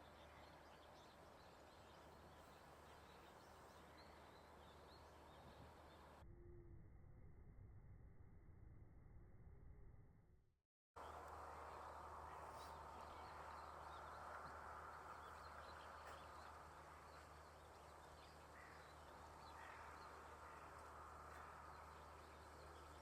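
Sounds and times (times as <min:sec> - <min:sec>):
distant bird calls: 0:11.0 - 0:23.0.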